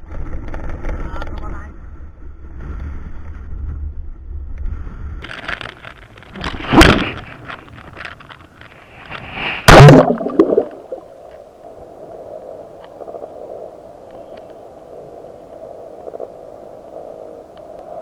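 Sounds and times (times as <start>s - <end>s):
splash into water: 9.3s - 11.1s
bubbles gurgling: 9.6s - 11.2s
faint clicks: 14.0s - 14.6s.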